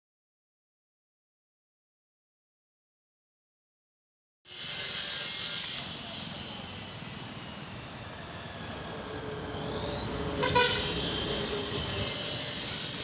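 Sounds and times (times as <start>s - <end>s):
road traffic rumble: 5.9s - 13.0s
vehicle horn toot: 10.4s - 11.0s.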